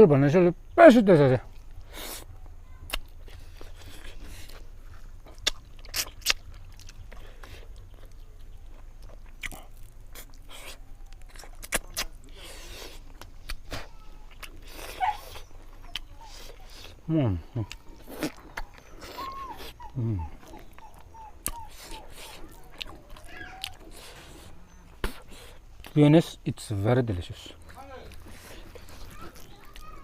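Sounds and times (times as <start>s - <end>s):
person chewing with wet clicks: 1.5s - 26.0s, 26.8s - 30.0s
lip smacks: 2.9s - 26.0s.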